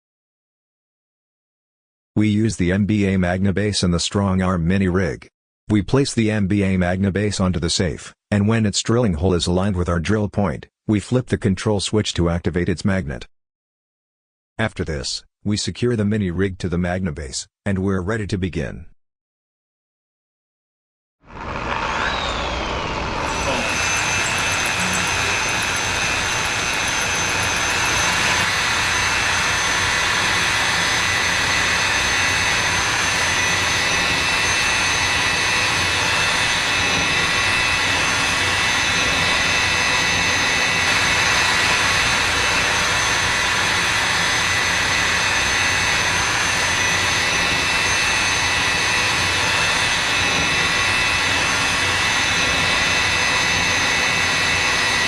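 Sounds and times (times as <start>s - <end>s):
electric drill whining: 21.3s - 55.0s
drill bit grinding into steel: 21.4s - 55.0s.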